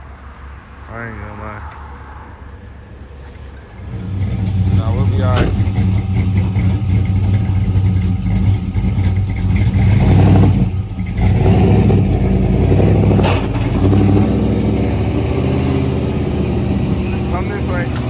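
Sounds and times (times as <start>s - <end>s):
car engine running: 3.7s - 18.0s.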